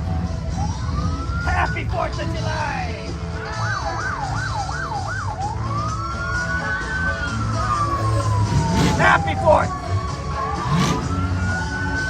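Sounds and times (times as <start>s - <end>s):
emergency siren yelping and wailing: 0.0s - 12.0s
steady low rumble: 7.1s - 12.0s.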